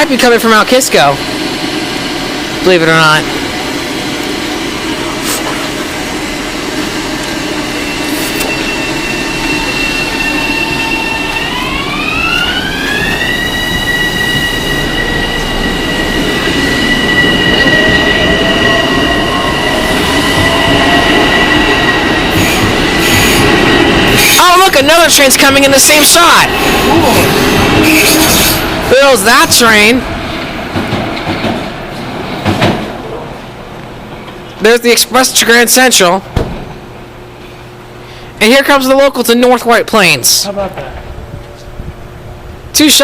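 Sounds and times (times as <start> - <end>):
train rail noise: 0.0 - 38.4
electric train propulsion whine: 0.0 - 43.0.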